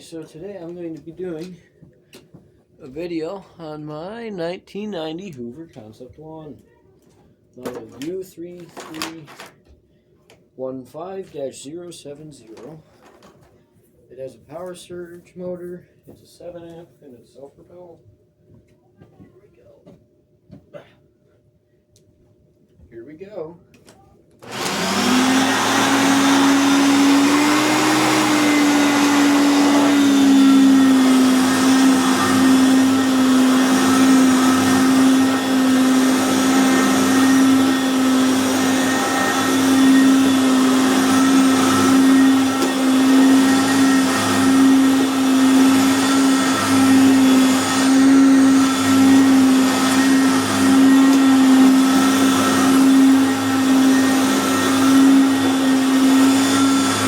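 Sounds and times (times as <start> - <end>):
vacuum cleaner motor humming: 24.4 - 57.0.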